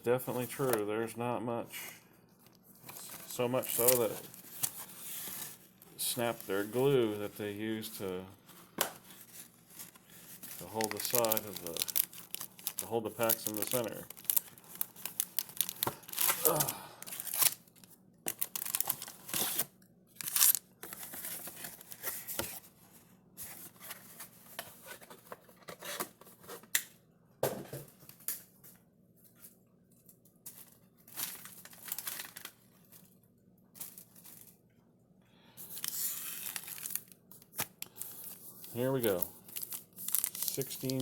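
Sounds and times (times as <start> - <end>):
packaging tearing and crinkling: 3.0 - 6.8, 8.8 - 22.2, 31.1 - 32.8, 35.6 - 41.0.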